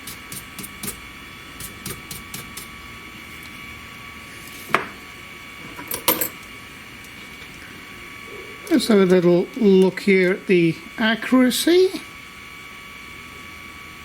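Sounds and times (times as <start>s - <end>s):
cnc router spindle whine: 6.5s - 14.0s.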